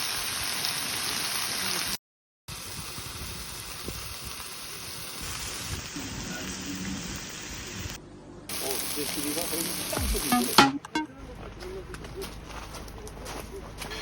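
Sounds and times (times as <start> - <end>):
food sizzling on a pan: 0.0 - 10.6.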